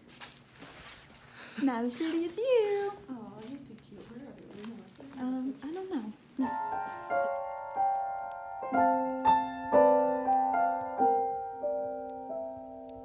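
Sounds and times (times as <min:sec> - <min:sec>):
soft piano tune: 0:06.4 - 0:13.0.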